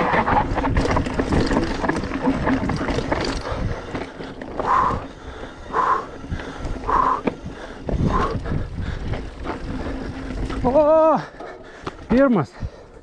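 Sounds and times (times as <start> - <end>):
wind and riding noise: 0.0 - 13.0
person breathing hard: 3.4 - 10.5, 11.2 - 13.0.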